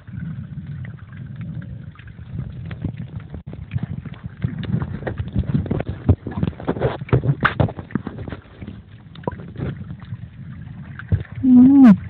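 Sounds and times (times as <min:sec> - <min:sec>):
low underwater rumble: 0:00.0 - 0:12.0.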